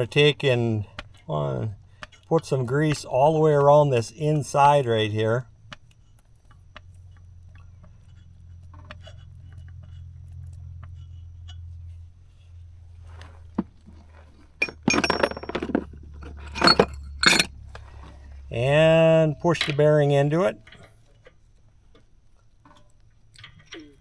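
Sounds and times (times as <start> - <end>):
metal parts clinking and scraping: 13.6 - 17.5.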